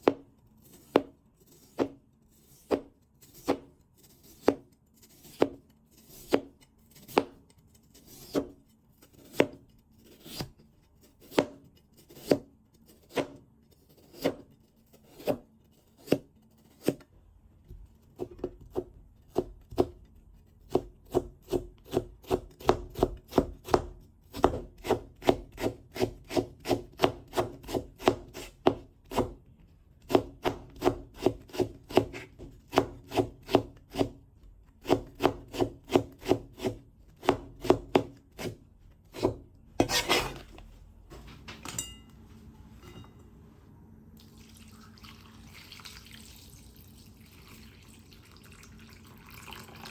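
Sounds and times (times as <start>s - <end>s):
knife cutting potato on board: 0.0s - 17.1s, 18.2s - 40.6s.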